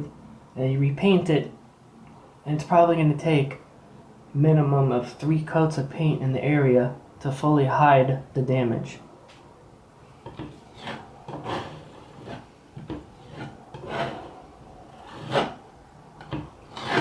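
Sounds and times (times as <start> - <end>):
spatula scraping filler on wall: 10.2 - 17.0.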